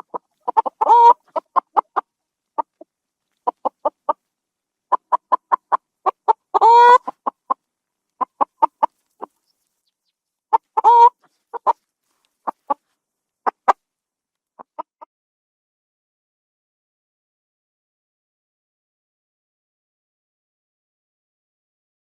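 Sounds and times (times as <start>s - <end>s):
chicken squawking: 0.0s - 2.0s, 4.9s - 7.5s, 10.5s - 11.8s
chicken clucking: 0.0s - 4.2s, 4.9s - 7.6s, 8.2s - 9.9s, 10.5s - 11.8s, 12.4s - 12.8s, 13.4s - 13.8s, 14.6s - 15.1s.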